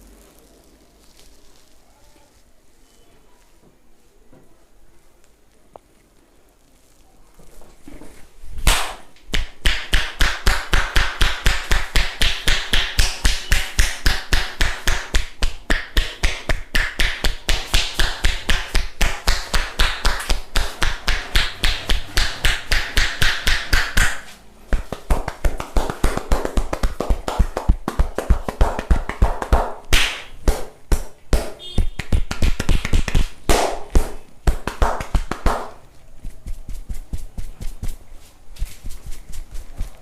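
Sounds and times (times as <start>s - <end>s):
hands slapping in massage: 8.6s - 40.0s.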